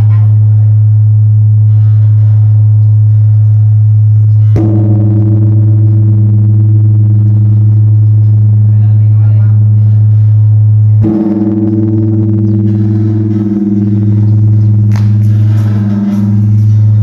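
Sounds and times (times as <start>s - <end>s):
large bronze bell ringing: 4.3s - 8.6s, 11.0s - 17.0s.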